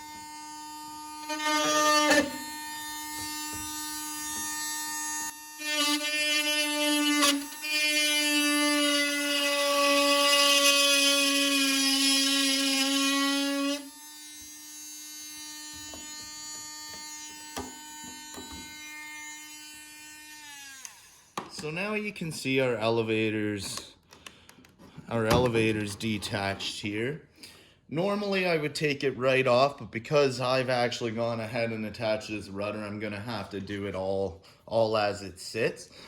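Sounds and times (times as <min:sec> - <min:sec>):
rotary tool cutting plastic: 0:00.0 - 0:21.7
rotary tool whining: 0:00.0 - 0:21.7.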